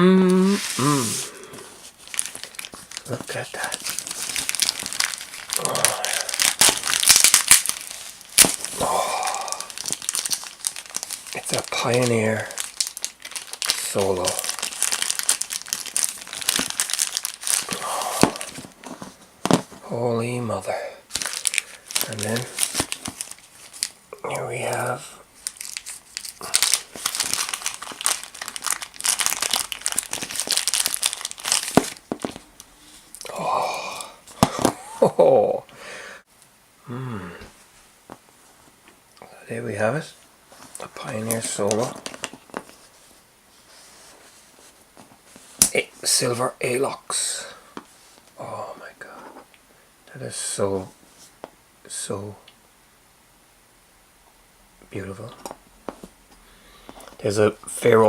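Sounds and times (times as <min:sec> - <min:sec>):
packaging crinkling and tearing: 0:01.9 - 0:19.8, 0:21.1 - 0:35.2, 0:40.6 - 0:43.0.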